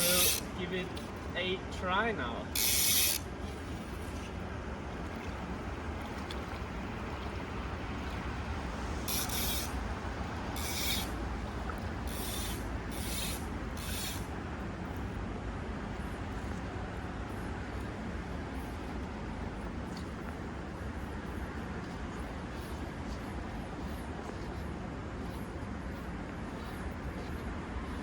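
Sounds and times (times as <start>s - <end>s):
short hissing swishes: 0.0s - 0.4s
stream flowing: 0.0s - 28.0s.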